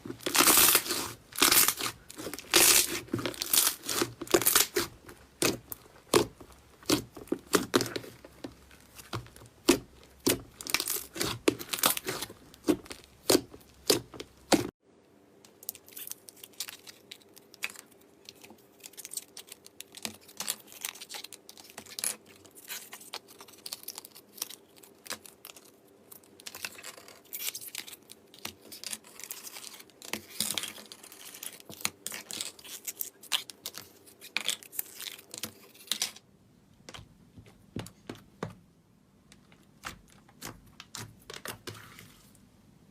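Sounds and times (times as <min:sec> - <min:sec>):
slime crackling and popping: 0:00.0 - 0:14.7.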